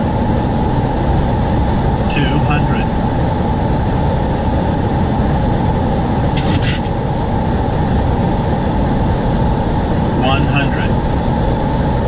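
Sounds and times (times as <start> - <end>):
cockpit airflow and engine noise: 0.0 - 12.0
short sharp high burst: 6.4 - 6.9.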